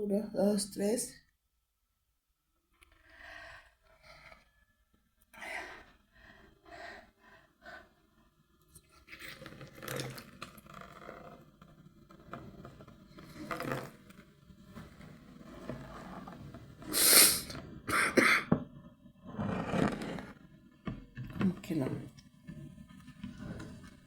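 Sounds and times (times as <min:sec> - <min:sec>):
nasal flushing bursts: 0:16.9 - 0:18.3.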